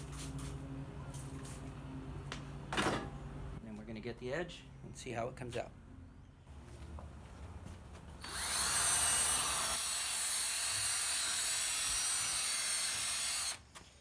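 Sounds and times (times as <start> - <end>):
power drill whining: 8.2 - 13.7.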